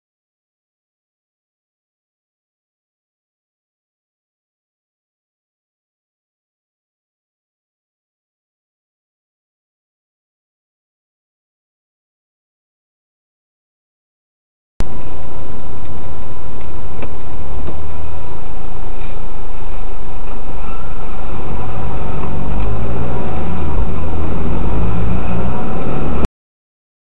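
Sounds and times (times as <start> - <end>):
faint wavering tone: 14.8 - 26.3
traffic engine and road rumble: 14.8 - 26.3.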